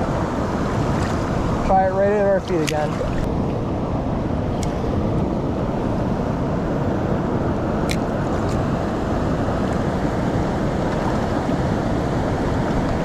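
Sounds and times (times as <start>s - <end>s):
water rushing over spillway: 0.0s - 3.5s.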